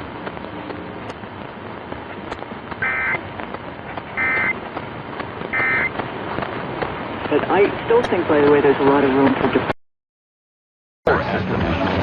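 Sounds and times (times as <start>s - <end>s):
radio static: 2.3s - 4.8s, 5.4s - 9.8s
two-pitch digital tone bursts: 2.8s - 3.2s, 4.2s - 4.5s, 5.6s - 5.9s.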